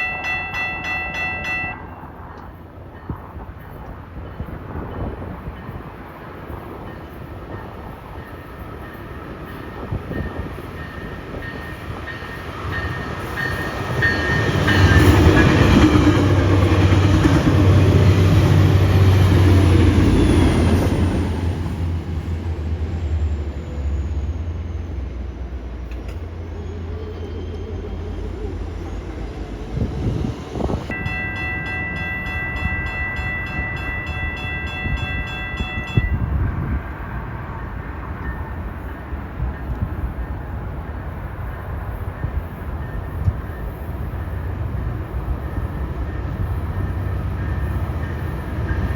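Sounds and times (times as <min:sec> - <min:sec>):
ringing bell: 0:00.0 - 0:02.1, 0:30.9 - 0:36.5
train engine drone: 0:00.0 - 0:48.9
train wheels rumbling: 0:00.0 - 0:48.9.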